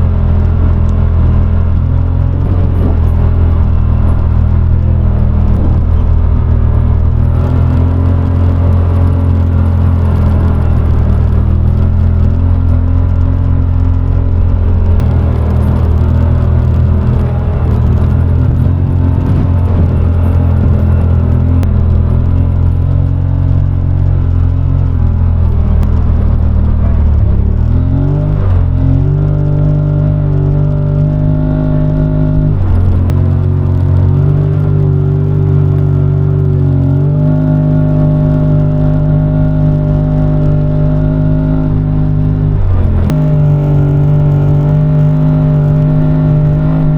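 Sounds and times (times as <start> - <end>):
vehicle engine droning: 0.0 - 46.9.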